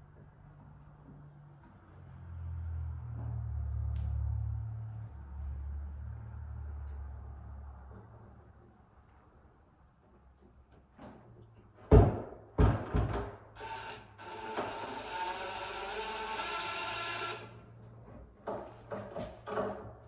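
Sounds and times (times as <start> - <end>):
cordless drill running: 13.6 - 17.6.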